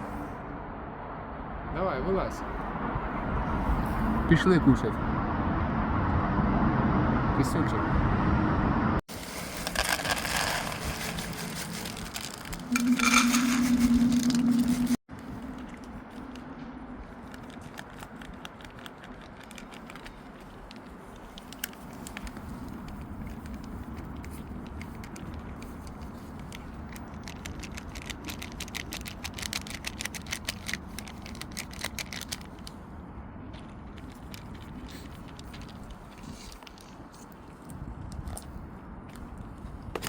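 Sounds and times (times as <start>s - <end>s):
cats crunching dry food: 9.1s - 12.7s, 17.0s - 32.8s, 33.5s - 39.5s.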